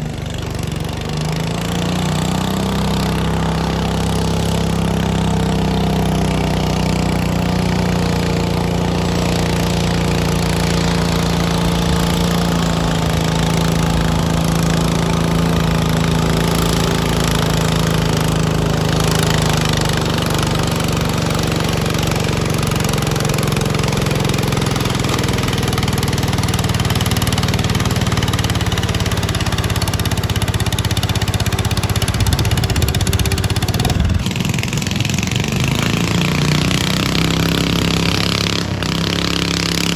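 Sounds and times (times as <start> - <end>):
tractor engine running under load: 0.0 - 39.9.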